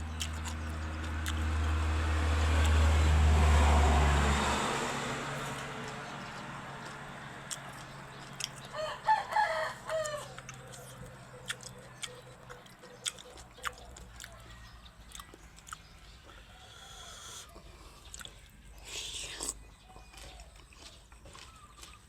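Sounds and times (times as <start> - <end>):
rooster crowing: 8.6 - 11.0.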